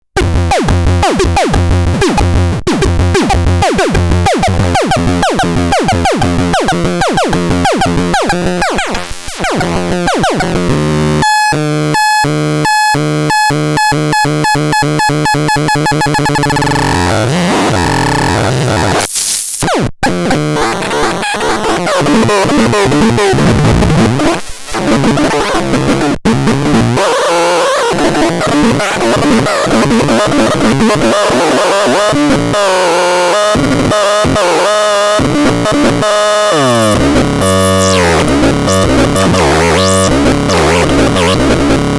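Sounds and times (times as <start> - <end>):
warbling electronic tones: 36.2 - 41.7
falling synth chirps: 36.4 - 41.5.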